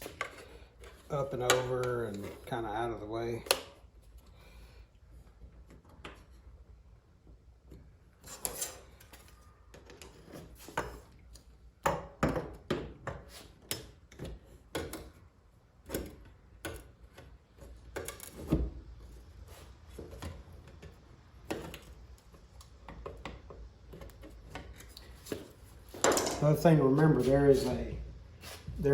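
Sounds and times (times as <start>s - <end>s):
mirror hardware clicks and knocks: 22.8s - 27.1s.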